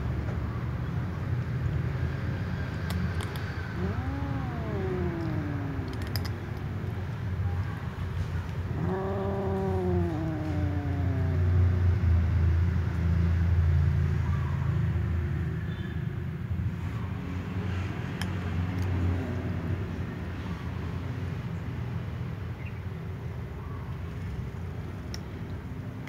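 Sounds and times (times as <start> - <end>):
cats meowing: 3.3 - 7.8, 8.4 - 12.0
low steady rumble: 3.6 - 13.0.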